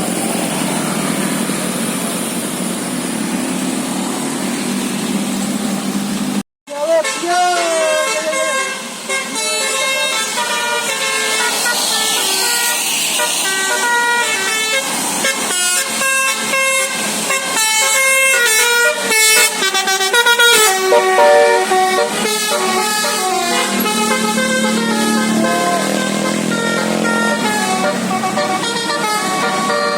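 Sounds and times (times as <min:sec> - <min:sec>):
bus musical air horn melody: 0:07.0 - 0:29.9.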